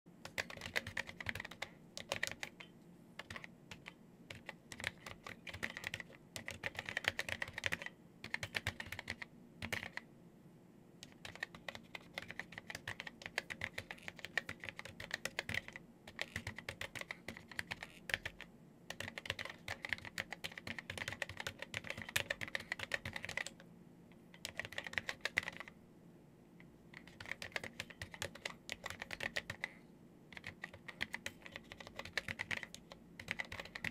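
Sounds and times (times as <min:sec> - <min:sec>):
faint steady hum: 0:00.1 - 0:33.9
keyboard key clicks: 0:27.0 - 0:29.7.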